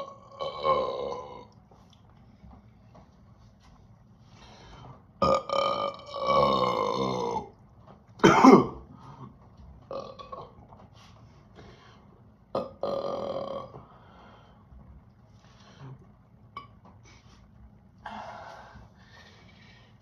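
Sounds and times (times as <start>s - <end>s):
person burping: 0.0s - 1.6s, 5.2s - 7.6s, 8.2s - 8.8s, 9.9s - 10.6s, 12.5s - 13.8s.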